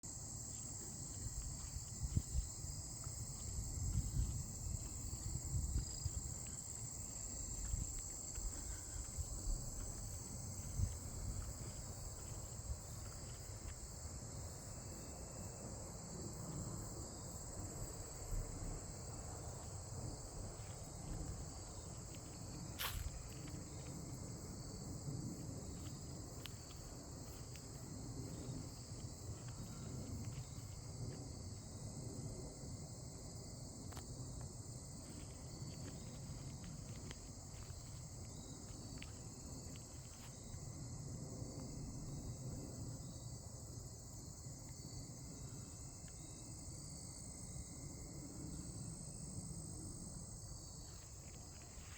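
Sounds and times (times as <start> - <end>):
high-pitched insect chorus: 0.0 - 51.9.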